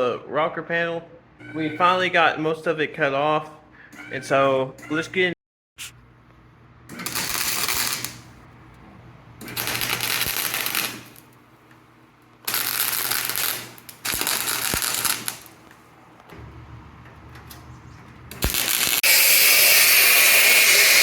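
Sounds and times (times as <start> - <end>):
welder crackling and sizzling: 7.0 - 8.4, 9.4 - 11.4, 12.4 - 15.7, 18.3 - 21.0.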